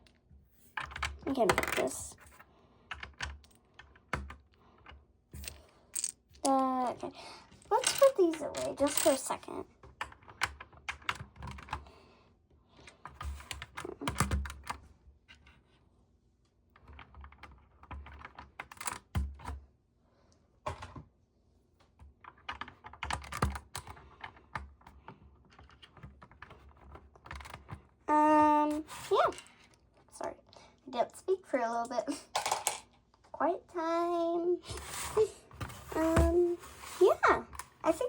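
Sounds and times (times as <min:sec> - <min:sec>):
plastic bricks clicking and clattering: 0:03.0 - 0:06.7, 0:07.6 - 0:09.4, 0:32.3 - 0:32.9.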